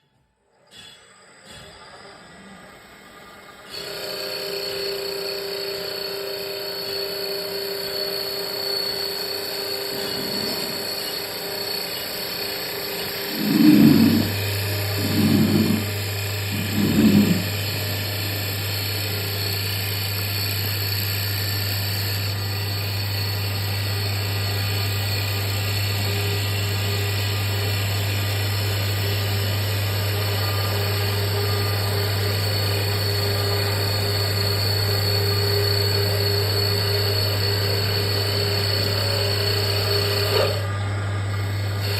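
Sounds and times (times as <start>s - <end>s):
thin high whine: 6.6s - 20.8s
machine motor hum: 6.9s - 41.9s.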